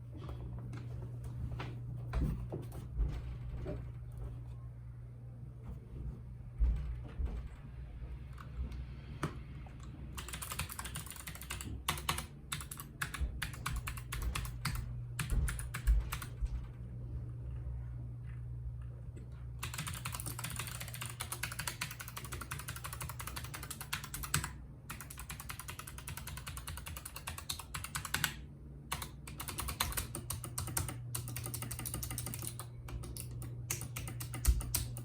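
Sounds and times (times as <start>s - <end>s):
rapid mechanical keyboard typing: 10.1s - 16.6s, 19.6s - 35.0s.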